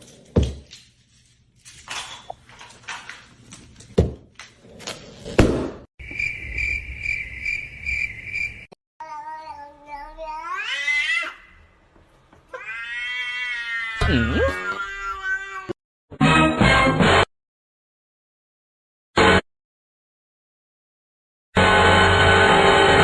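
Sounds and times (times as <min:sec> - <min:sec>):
cat meowing: 0:12.5 - 0:15.8.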